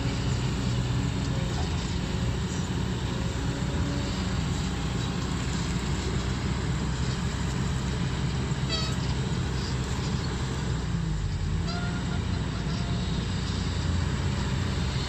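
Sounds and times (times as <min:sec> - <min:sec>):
excavator diesel engine running: 0:00.0 - 0:15.0.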